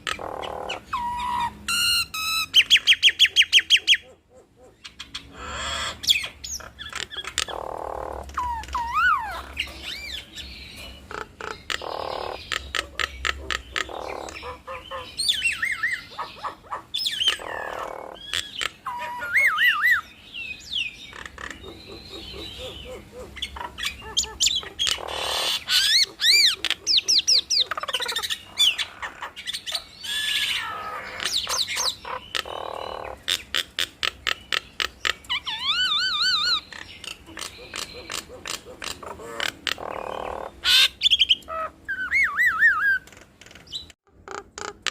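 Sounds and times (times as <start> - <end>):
mynas calling: 0.0 - 44.9.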